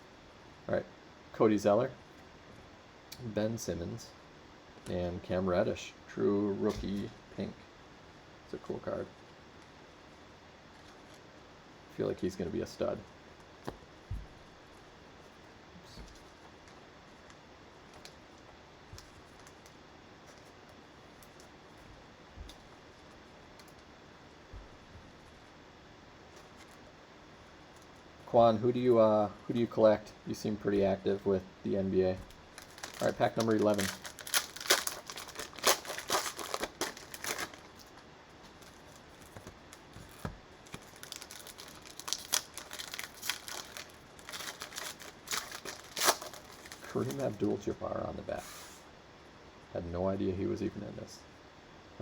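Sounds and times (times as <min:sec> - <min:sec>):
low steady hiss: 0:00.0 - 0:52.0
cellophane wrapper crinkling and tearing: 0:16.6 - 0:21.6, 0:32.2 - 0:47.6
trading cards being handled: 0:32.2 - 0:47.6.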